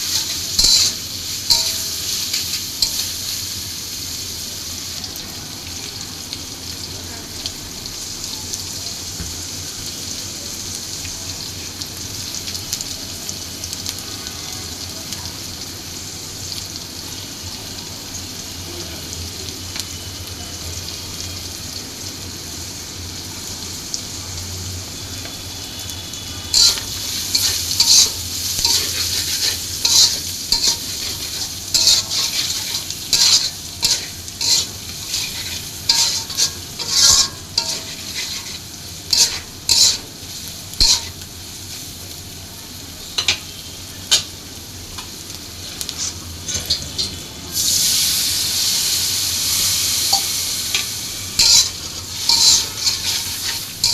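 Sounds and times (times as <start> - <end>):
spatula scraping a pan: 0.0 - 3.2, 26.5 - 41.2, 45.8 - 47.2, 50.8 - 53.9
food sizzling in oil: 0.0 - 53.9.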